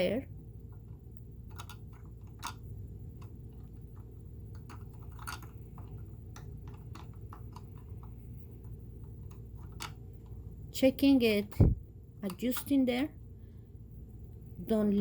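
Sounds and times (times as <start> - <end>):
small metal parts clicking: 1.4 - 10.4.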